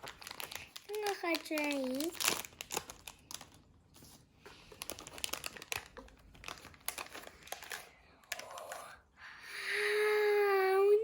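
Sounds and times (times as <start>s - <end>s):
plastic packaging crinkling and tearing: 0.0s - 8.7s.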